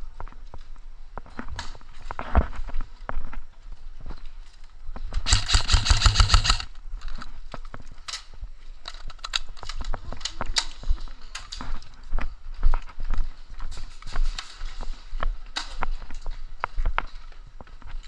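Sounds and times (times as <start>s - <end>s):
airsoft gun full-auto burst: 5.3s - 6.7s
footsteps: 5.3s - 6.7s
rustling clicks: 5.3s - 6.7s.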